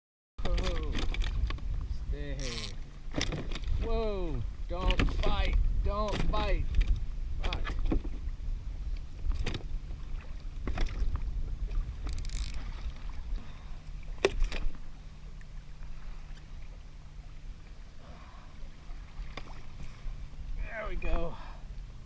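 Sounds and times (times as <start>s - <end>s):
knocks and clunks from boat: 0.4s - 16.7s, 17.4s - 20.2s, 21.0s - 21.5s
low steady hum: 0.4s - 22.0s
wind buffeting microphone: 3.2s - 13.4s.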